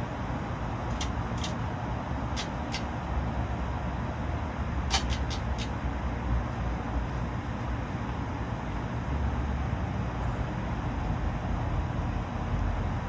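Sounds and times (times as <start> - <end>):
ceiling fan air rushing: 0.0 - 13.0.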